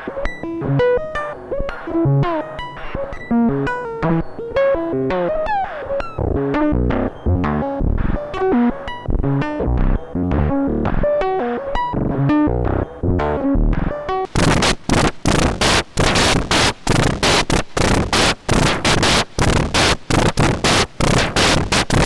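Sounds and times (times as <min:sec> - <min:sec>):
rhythmic noise bursts: 0:14.3 - 0:22.0.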